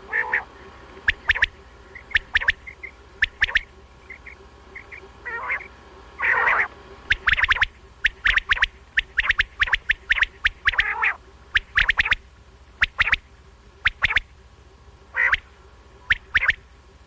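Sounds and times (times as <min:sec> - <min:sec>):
lower rough bird call: 0:00.0 - 0:12.2
quail calling: 0:00.0 - 0:14.4, 0:15.1 - 0:16.7.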